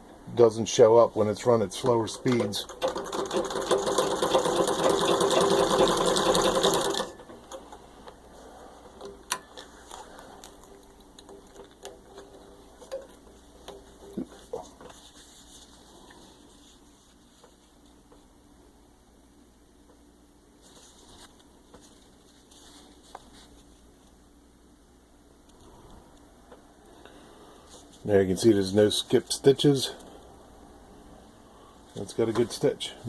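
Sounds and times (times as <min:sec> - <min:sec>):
treadle sewing machine stitching: 0:02.3 - 0:07.4.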